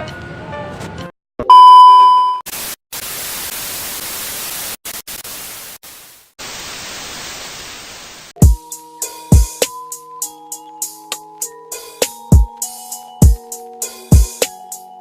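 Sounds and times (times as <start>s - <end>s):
loud electronic beep: 1.5s - 2.4s
static hiss: 2.5s - 8.4s.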